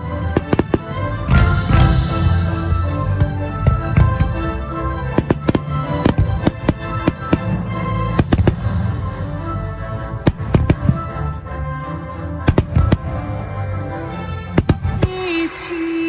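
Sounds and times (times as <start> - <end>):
music: 0.0 - 16.0
fireworks bursting: 0.3 - 2.1, 3.2 - 4.5, 5.1 - 9.0, 10.3 - 11.3, 12.5 - 13.4, 14.6 - 15.7.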